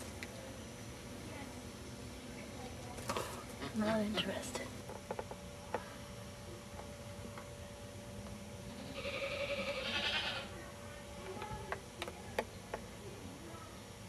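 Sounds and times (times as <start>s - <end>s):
goat bleating: 8.7s - 10.5s.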